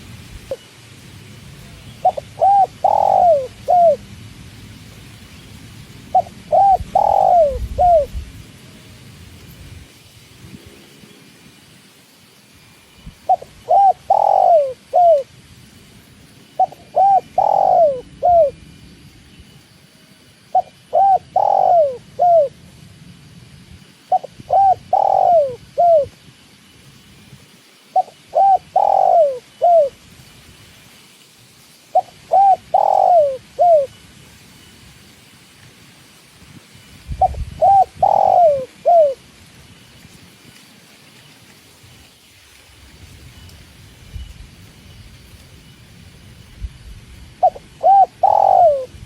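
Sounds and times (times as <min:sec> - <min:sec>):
dove cooing: 0:01.7 - 0:04.0, 0:06.1 - 0:08.2, 0:13.2 - 0:15.3, 0:16.6 - 0:18.6, 0:20.5 - 0:22.6, 0:24.1 - 0:26.2, 0:27.9 - 0:30.0, 0:31.9 - 0:33.9, 0:37.2 - 0:39.2, 0:47.4 - 0:49.0.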